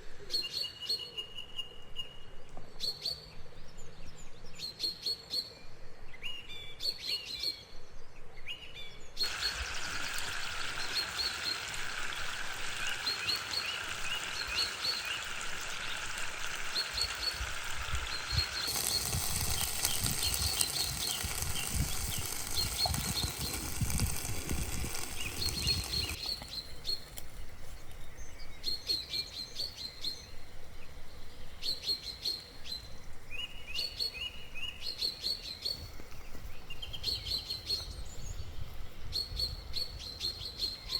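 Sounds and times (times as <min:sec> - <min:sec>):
small songbirds chirping: 0:00.4 - 0:40.9
steady hiss: 0:09.2 - 0:27.7.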